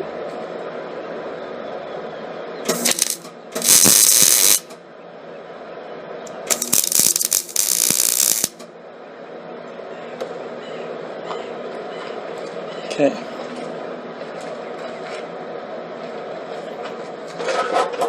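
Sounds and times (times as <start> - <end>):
welding arc crackling: 2.7 - 4.7, 6.3 - 8.6.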